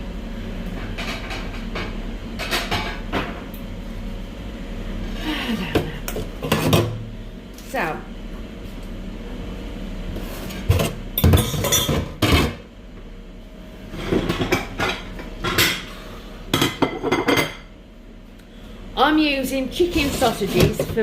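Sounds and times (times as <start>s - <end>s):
dishes and utensils clattering: 10.7s - 12.6s, 14.0s - 15.9s, 16.5s - 17.7s.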